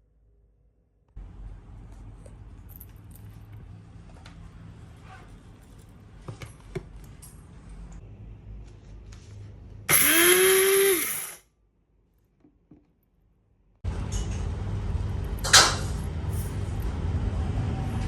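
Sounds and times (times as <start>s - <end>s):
spice grinder motor: 9.9s - 11.4s.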